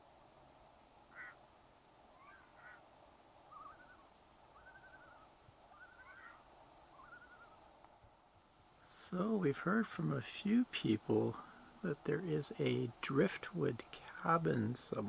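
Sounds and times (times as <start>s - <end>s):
low steady hiss: 0.0s - 15.0s
faint wavering bird calls: 1.0s - 7.8s.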